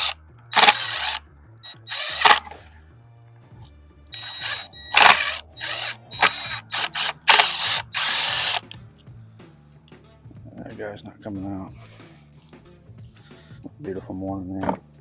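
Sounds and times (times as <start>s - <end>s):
power drill bursts: 0.0s - 1.2s, 1.8s - 2.5s, 4.2s - 8.6s.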